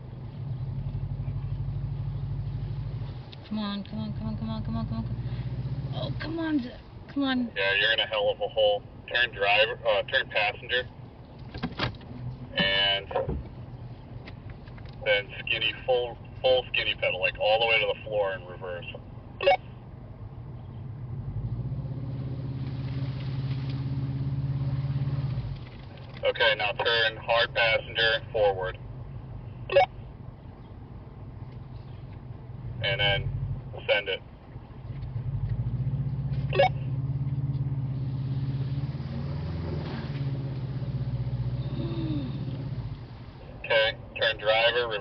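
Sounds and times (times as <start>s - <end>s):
vehicle engine at high revs: 0.0s - 6.7s, 20.6s - 27.2s, 34.8s - 43.9s.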